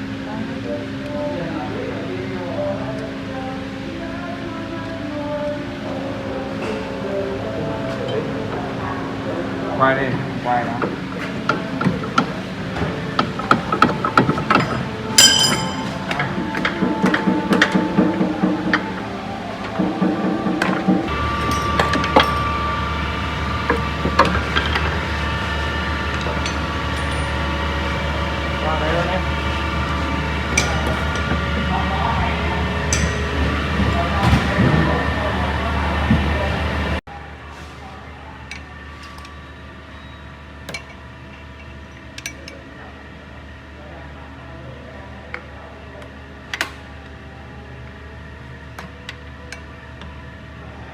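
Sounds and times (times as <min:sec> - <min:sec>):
low machine hum: 0:00.0 - 0:50.9
metallic tool clinks: 0:14.6 - 0:16.0.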